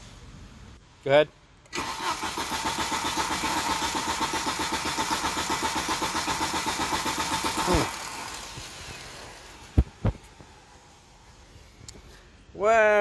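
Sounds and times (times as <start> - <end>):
engine cranking on starter motor: 1.7 - 10.1
starter winding down: 1.8 - 9.9.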